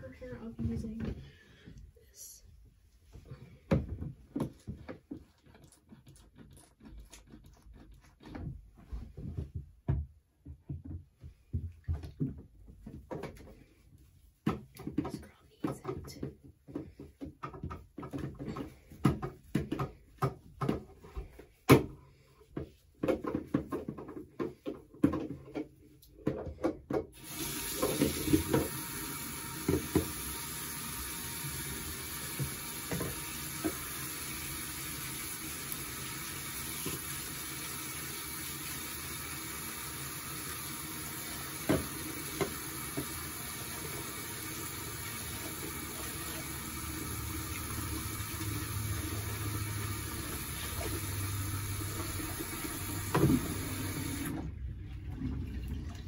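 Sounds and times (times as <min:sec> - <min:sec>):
sink tap running: 0:27.2 - 0:54.5.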